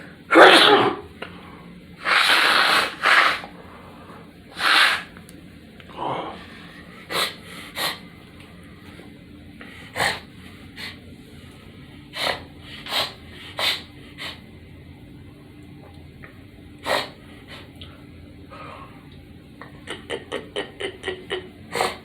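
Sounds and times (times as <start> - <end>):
person blowing breath through nose: 2.0 - 3.5, 4.5 - 5.1.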